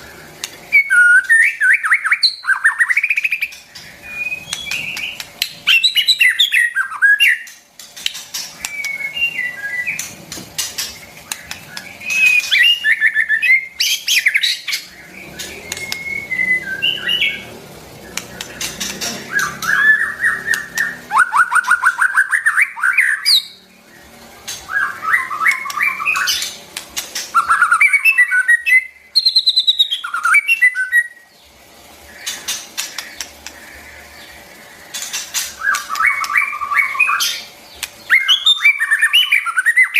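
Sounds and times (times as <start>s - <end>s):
bird singing whistled phrases: 0.7s - 7.5s, 8.6s - 10.0s, 11.7s - 17.5s, 19.1s - 23.6s, 24.7s - 26.5s, 27.4s - 31.3s, 35.6s - 37.5s, 38.1s - 39.9s
sharp bird clicks: 2.1s - 6.2s, 7.3s - 12.8s, 13.8s - 16.2s, 18.0s - 22.0s, 25.4s - 27.8s, 32.2s - 33.8s, 34.9s - 38.5s.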